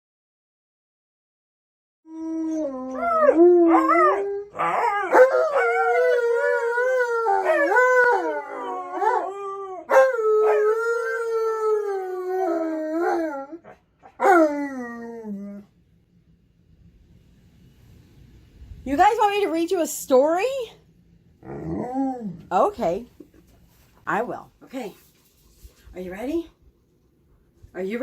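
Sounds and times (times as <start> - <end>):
dog howling vocalizations: 2.1 - 15.7, 21.4 - 22.5.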